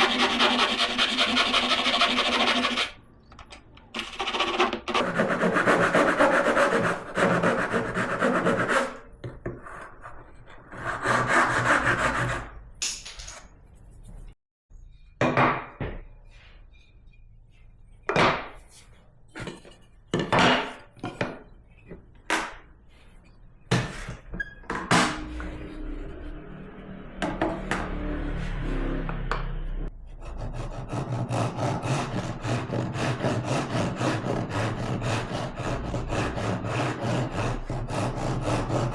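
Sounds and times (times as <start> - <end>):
hand tool scraping wood: 0.0 - 2.9, 4.0 - 8.9.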